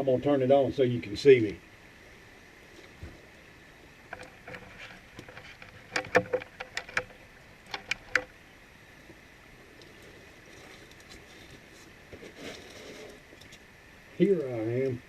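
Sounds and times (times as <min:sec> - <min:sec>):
sharp clicks and crackles: 0:04.1 - 0:08.3.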